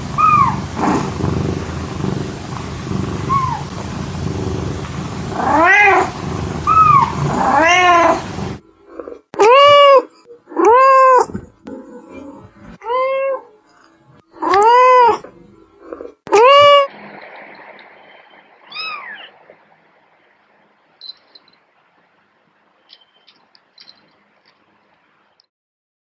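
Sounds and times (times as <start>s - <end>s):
kittens meowing: 0.0s - 8.6s, 18.7s - 19.3s
background hiss: 0.0s - 25.5s.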